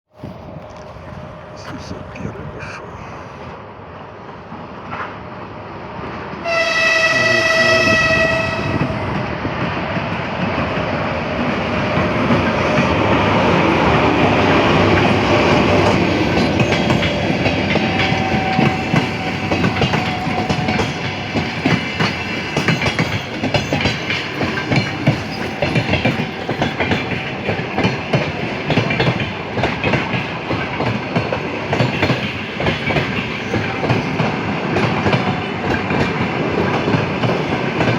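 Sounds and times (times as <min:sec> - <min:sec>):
train horn blast: 0:06.4 - 0:09.2
train wheels clacking over rail joints: 0:06.8 - 0:37.9.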